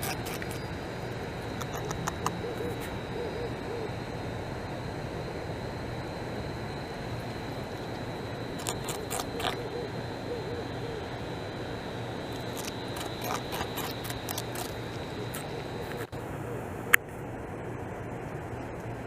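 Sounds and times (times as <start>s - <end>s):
beaver gnawing bark: 0.0s - 3.0s, 7.6s - 9.8s, 12.2s - 16.1s.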